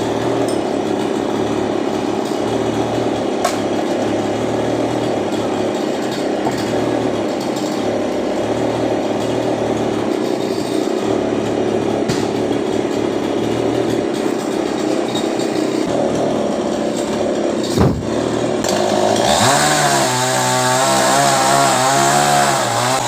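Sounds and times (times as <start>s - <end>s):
chainsaw engine running: 0.0s - 23.0s.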